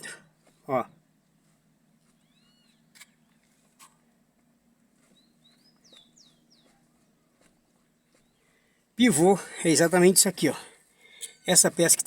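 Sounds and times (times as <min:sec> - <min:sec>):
faint bird chirps: 0:02.0 - 0:04.1, 0:05.0 - 0:08.8.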